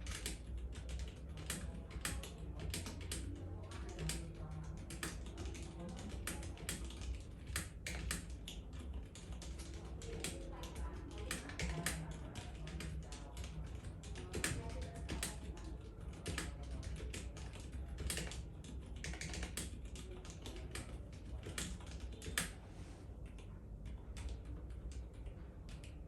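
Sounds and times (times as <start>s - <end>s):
mechanical keyboard typing: 0.0s - 22.6s, 23.2s - 26.0s.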